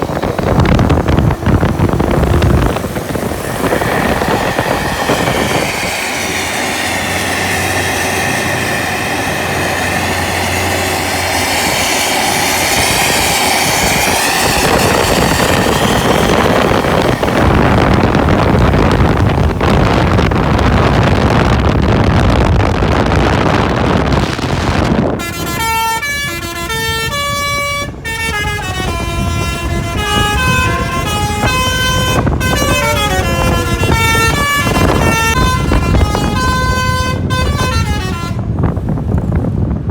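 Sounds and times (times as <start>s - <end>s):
bus engine and road noise: 0.0s - 39.9s
multi-tone air horn melody: 2.1s - 19.4s, 25.1s - 38.7s.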